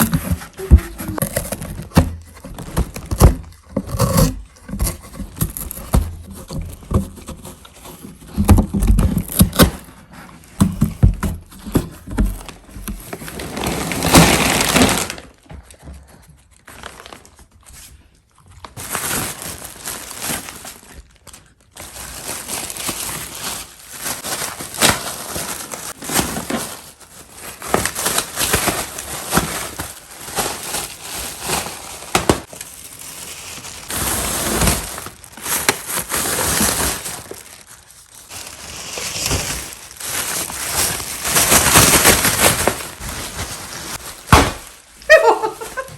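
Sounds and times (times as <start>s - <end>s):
plastic air cushions crinkling: 0.0s - 9.6s, 10.6s - 15.5s, 18.8s - 45.9s
sharp cracks and thuds: 44.2s - 44.9s.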